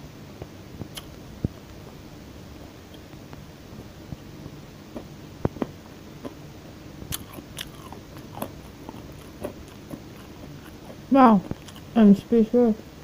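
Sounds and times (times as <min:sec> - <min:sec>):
chewing crunchy food: 0:07.0 - 0:12.0.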